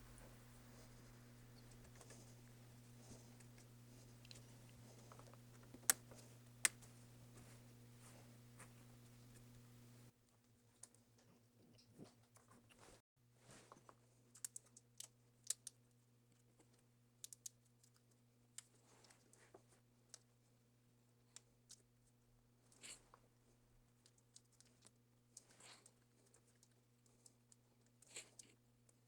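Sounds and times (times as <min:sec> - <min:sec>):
low steady hum: 0:00.0 - 0:10.1.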